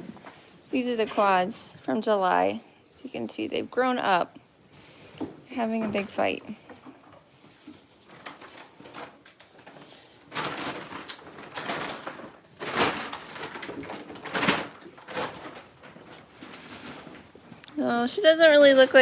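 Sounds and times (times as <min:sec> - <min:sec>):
goats scuffling and rustling: 0:02.3 - 0:17.6.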